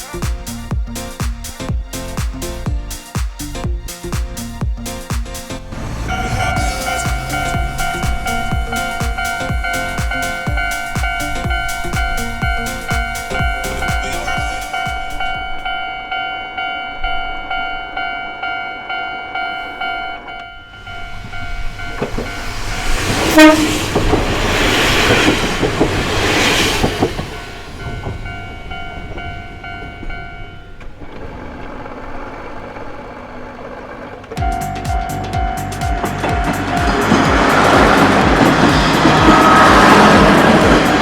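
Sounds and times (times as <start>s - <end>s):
diesel train rumble: 0.0s - 41.0s
level-crossing warning bell: 5.7s - 25.8s, 26.9s - 31.1s, 34.4s - 41.0s
train horn blast: 5.8s - 15.9s, 18.8s - 25.8s, 36.0s - 41.0s.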